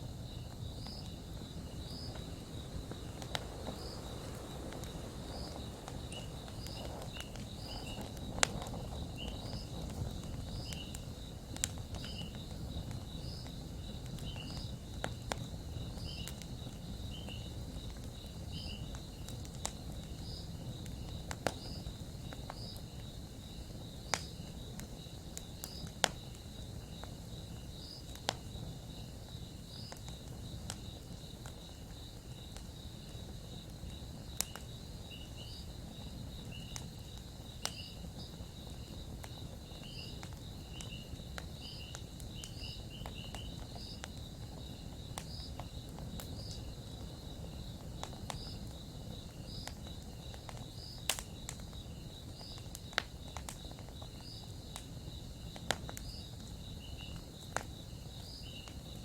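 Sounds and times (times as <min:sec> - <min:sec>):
campfire crackling and popping: 0:00.0 - 0:59.0
insect chirping: 0:00.0 - 0:59.0.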